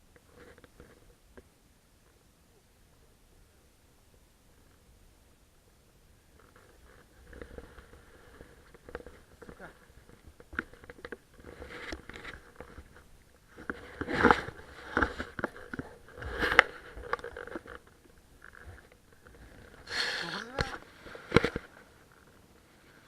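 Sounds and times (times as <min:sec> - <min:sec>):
fishing gear knocking and scraping: 0:06.4 - 0:21.7.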